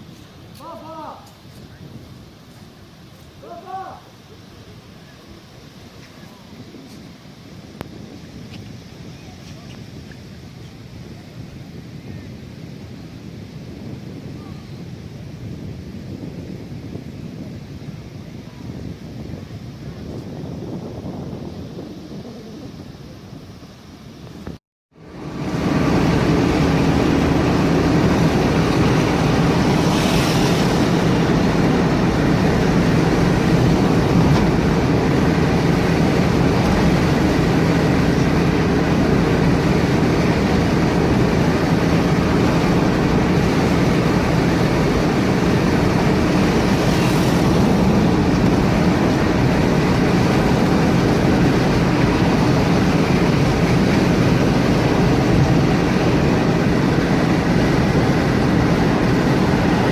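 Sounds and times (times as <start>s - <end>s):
moving vehicle rumbling: 25.0s - 59.9s
brief hissing: 29.8s - 30.8s.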